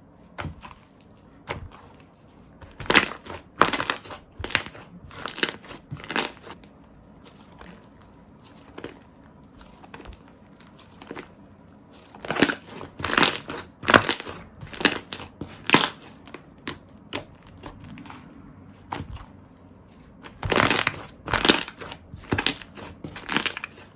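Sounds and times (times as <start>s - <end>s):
hands squishing slime: 0.0s - 23.9s.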